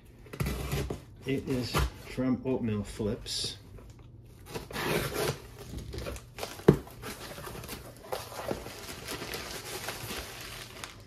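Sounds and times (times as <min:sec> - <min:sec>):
packaging rustling and tearing: 0:04.3 - 0:11.0.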